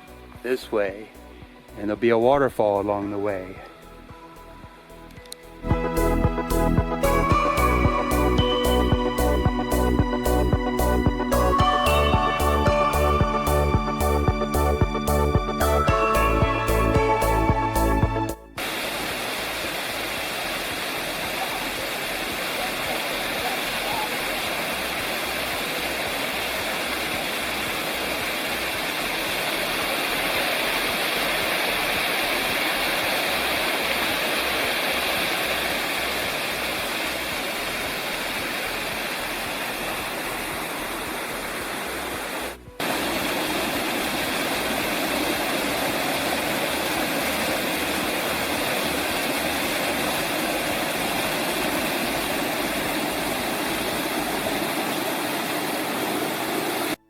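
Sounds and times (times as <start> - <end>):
creek water rushing: 0.0 - 57.0.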